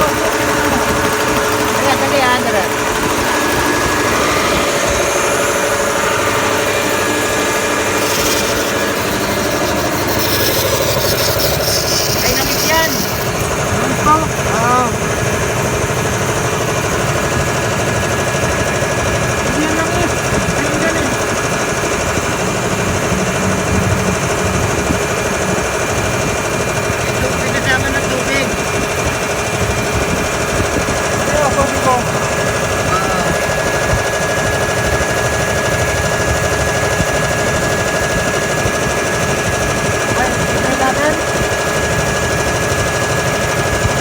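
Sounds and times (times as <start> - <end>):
piston air compressor running: 0.0 - 44.0.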